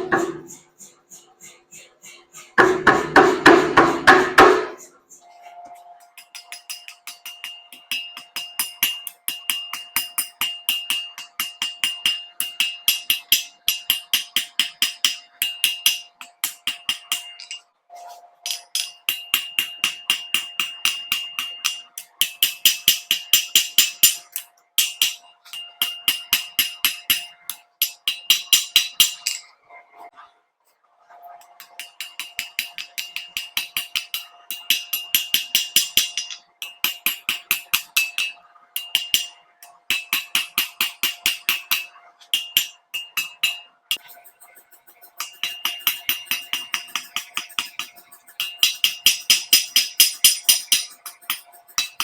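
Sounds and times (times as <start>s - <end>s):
hammer blows on anvil: 0.0s - 5.0s.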